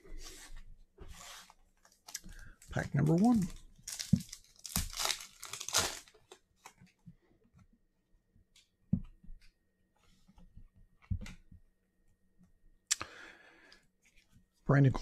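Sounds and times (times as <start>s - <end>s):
card pack wrapper tearing: 3.0s - 6.4s.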